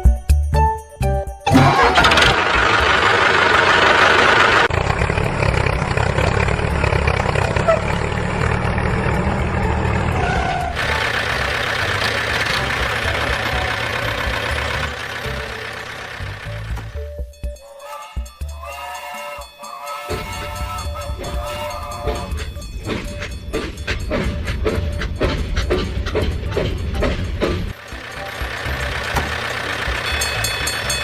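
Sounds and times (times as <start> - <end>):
engine idling with low chugging: 1.7 - 10.1, 10.7 - 17.6, 18.2 - 31.0.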